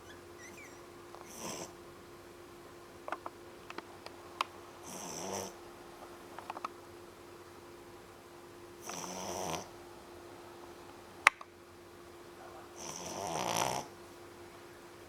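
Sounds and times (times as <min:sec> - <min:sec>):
puppy snoring: 0:00.0 - 0:01.8, 0:04.8 - 0:05.6, 0:08.8 - 0:09.8, 0:12.4 - 0:13.9
faint clicks: 0:03.0 - 0:05.4, 0:06.0 - 0:06.8, 0:08.8 - 0:09.3, 0:10.8 - 0:11.6.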